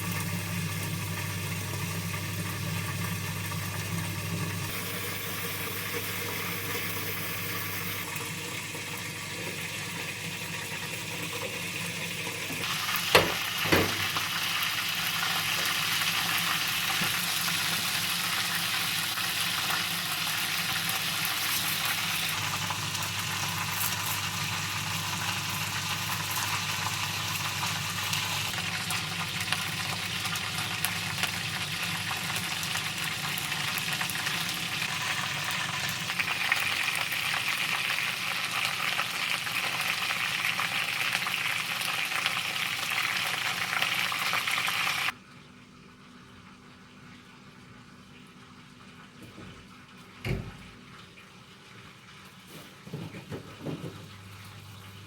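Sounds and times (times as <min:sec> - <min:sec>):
food sizzling in a pan: 0:00.0 - 0:08.1, 0:09.1 - 0:45.2
sharp knocks: 0:13.1 - 0:14.1.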